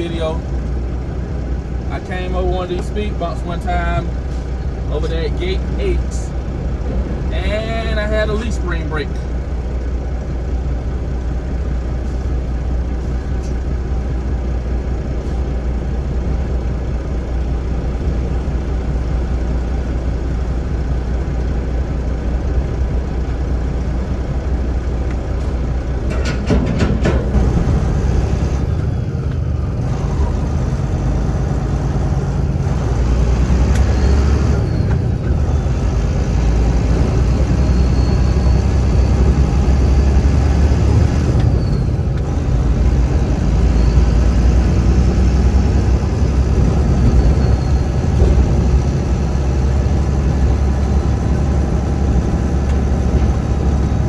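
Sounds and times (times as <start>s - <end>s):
diesel truck engine drone: 0.0s - 54.0s
road noise: 0.0s - 54.0s
short clatter: 25.4s - 28.2s.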